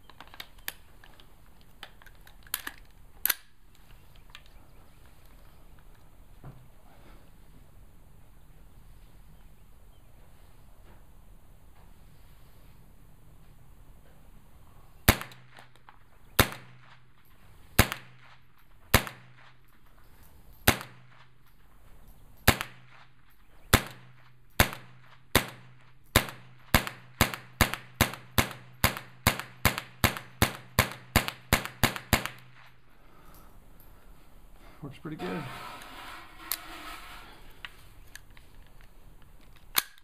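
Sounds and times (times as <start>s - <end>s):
rifle shots: 15.1s - 17.1s, 17.8s - 19.6s, 20.6s - 21.3s, 22.4s - 32.8s.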